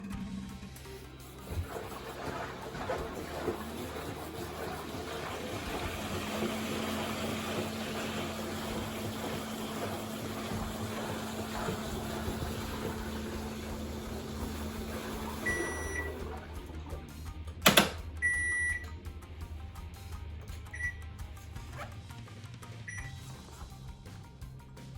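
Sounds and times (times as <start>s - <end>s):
motor hum: 0.0s - 19.1s
washing machine drum turning: 1.0s - 19.0s
drive belt swishing: 1.3s - 16.4s
short beeps from machine: 15.4s - 16.1s, 18.2s - 18.9s, 20.6s - 21.0s, 22.9s - 23.1s.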